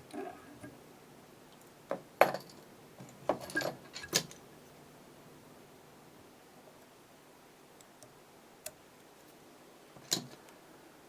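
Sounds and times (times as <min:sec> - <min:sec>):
metal tools clicking and clinking: 0:03.3 - 0:04.4.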